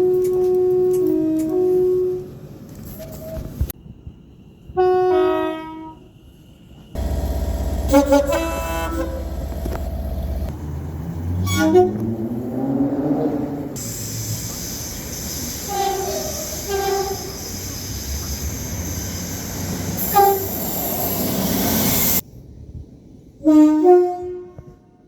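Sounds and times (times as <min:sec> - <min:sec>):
moving train rumble and hiss: 0:00.0 - 0:23.5
train horn blasts: 0:04.8 - 0:06.2, 0:07.0 - 0:10.5, 0:11.4 - 0:12.3, 0:20.0 - 0:20.6, 0:23.4 - 0:25.0.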